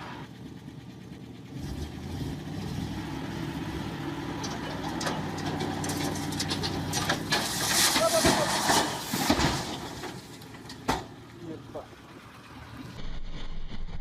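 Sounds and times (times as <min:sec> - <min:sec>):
vehicle engine running: 0:00.0 - 0:07.6, 0:09.8 - 0:14.0.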